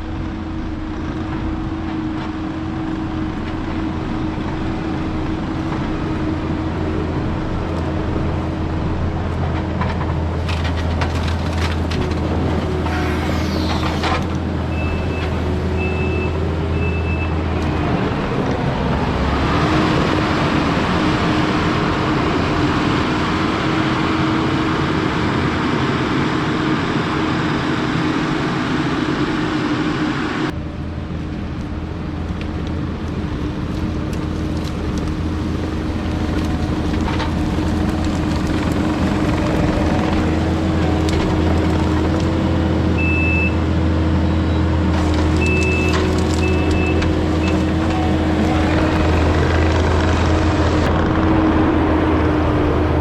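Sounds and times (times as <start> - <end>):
diesel heavy equipment running: 0.0 - 53.0
backup alarm beeps: 14.7 - 17.3, 43.0 - 43.6.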